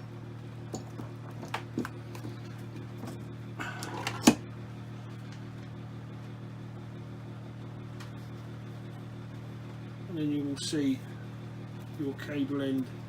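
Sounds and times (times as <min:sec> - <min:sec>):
steady hum: 0:00.0 - 0:13.0.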